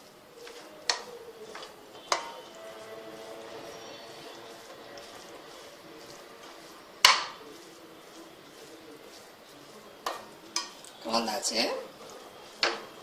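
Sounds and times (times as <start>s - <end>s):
spoon stirring food in pan: 0.0s - 13.0s
spoon knocking against pan: 0.9s - 2.4s, 7.0s - 7.4s, 10.0s - 10.8s.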